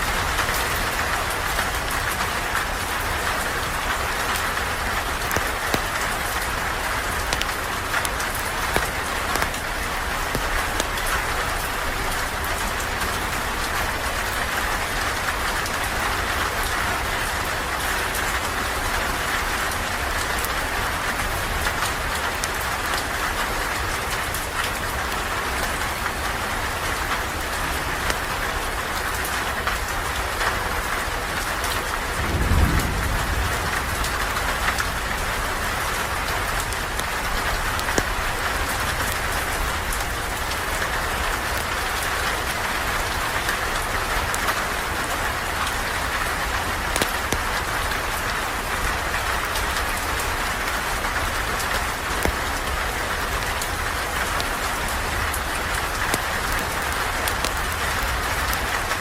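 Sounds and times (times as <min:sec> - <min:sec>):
heavy rain on a surface: 0:00.0 - 0:59.0
deep thunder rumble: 0:32.1 - 0:37.7.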